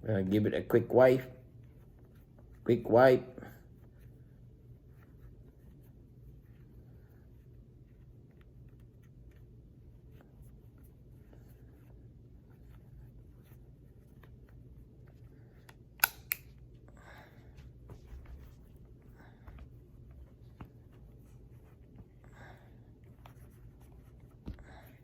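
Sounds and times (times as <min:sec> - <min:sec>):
sharp clicks: 0:16.0 - 0:16.5.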